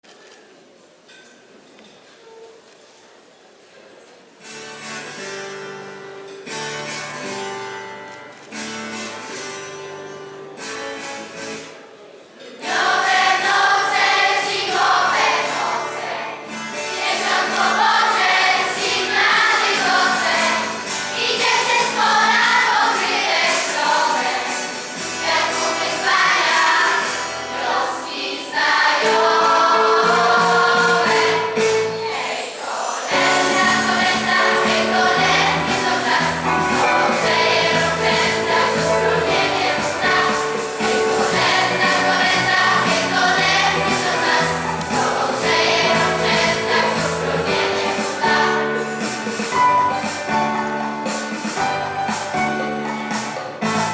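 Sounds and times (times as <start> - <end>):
choir singing a carol: 12.6 - 49.6.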